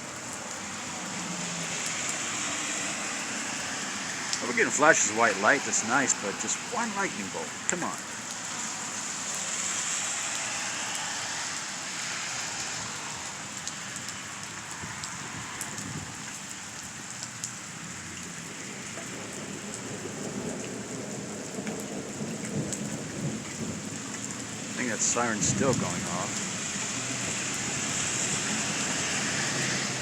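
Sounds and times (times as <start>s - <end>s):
rain pattering: 0.0s - 30.0s.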